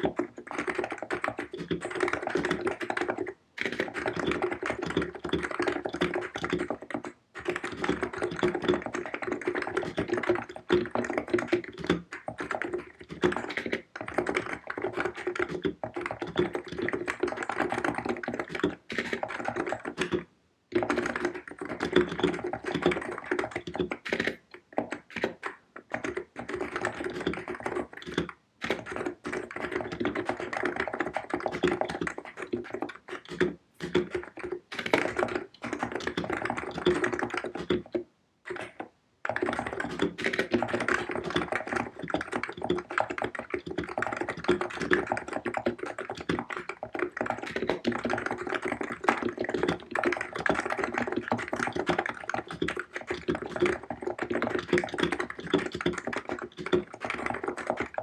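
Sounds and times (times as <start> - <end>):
fast typing on keyboard: 0.0 - 58.0.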